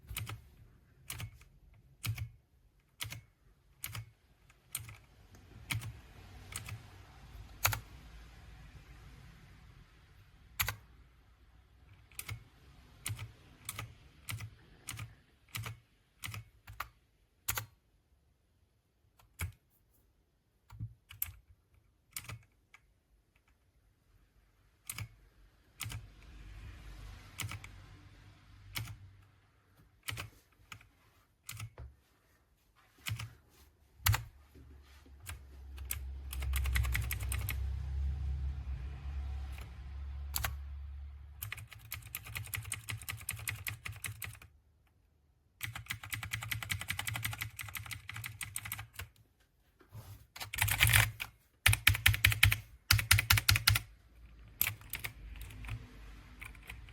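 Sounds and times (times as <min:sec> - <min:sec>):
mechanical keyboard keystrokes: 0:00.0 - 0:06.9, 0:07.5 - 0:07.9, 0:10.6 - 0:10.9, 0:11.9 - 0:17.8, 0:20.7 - 0:22.8, 0:24.8 - 0:26.3, 0:27.3 - 0:27.7, 0:28.7 - 0:29.0, 0:30.0 - 0:30.9, 0:34.0 - 0:34.3, 0:35.2 - 0:37.6, 0:40.3 - 0:40.6, 0:41.4 - 0:44.5, 0:45.6 - 0:49.2, 0:50.4 - 0:56.9
low rumble: 0:35.3 - 0:41.4.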